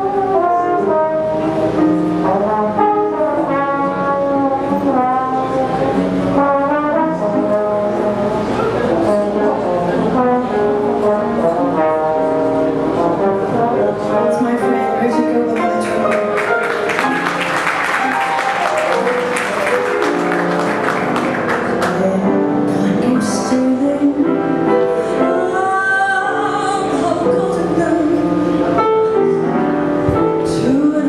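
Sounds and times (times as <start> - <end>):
brass ensemble playing chords: 0.0 - 23.2.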